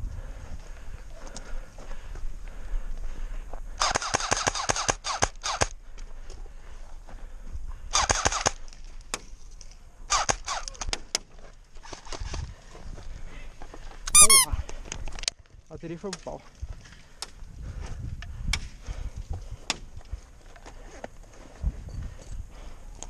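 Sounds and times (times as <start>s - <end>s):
airsoft guns firing bursts: 3.8s - 5.7s, 7.9s - 8.6s.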